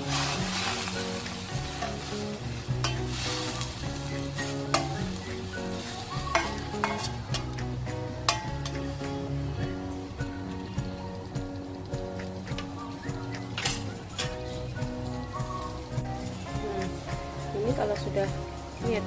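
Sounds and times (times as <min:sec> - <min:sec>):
utensil stirring in a pan: 0:00.0 - 0:10.2, 0:10.8 - 0:18.8
background music: 0:00.0 - 0:19.0
steady sizzle: 0:00.0 - 0:19.0
utensil knocking against pan: 0:04.7 - 0:05.2, 0:06.2 - 0:09.0.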